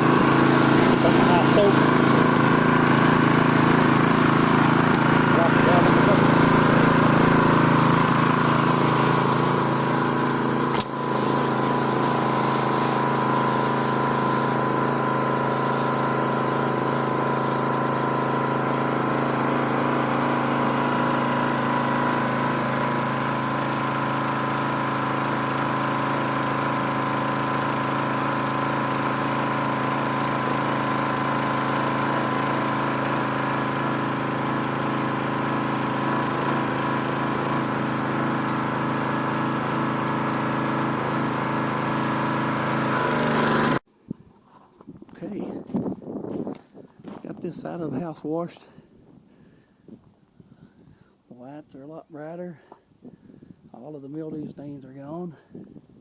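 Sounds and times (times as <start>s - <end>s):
spray hissing: 0.0s - 22.4s
pressure washer engine running: 0.0s - 43.8s
sharp click: 10.7s - 11.0s.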